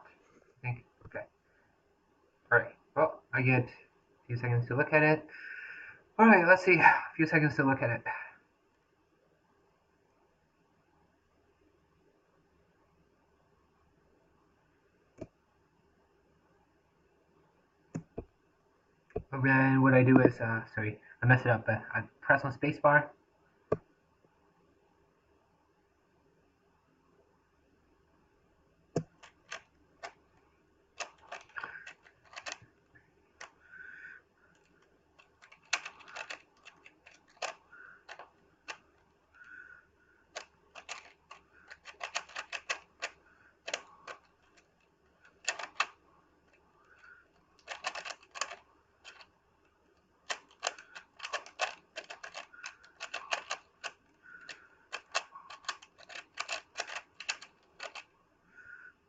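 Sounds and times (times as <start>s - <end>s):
puzzle cube clicking: 29.0s - 30.2s, 31.0s - 32.7s, 34.6s - 39.0s, 40.3s - 49.3s, 50.2s - 58.1s.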